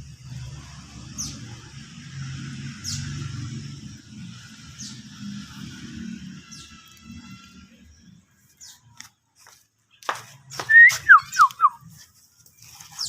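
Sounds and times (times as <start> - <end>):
songbird downward-sweeping calls: 10.7 - 11.9.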